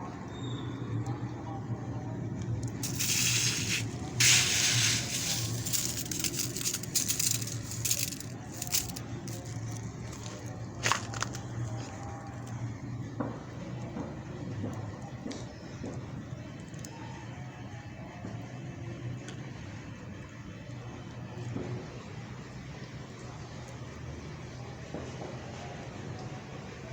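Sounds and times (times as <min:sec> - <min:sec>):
hailstones striking: 0:02.8 - 0:09.8.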